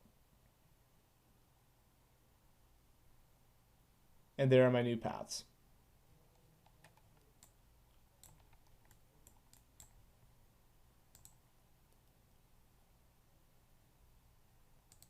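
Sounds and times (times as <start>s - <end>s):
faint computer mouse clicks: 6.6s - 10.0s, 11.1s - 12.2s.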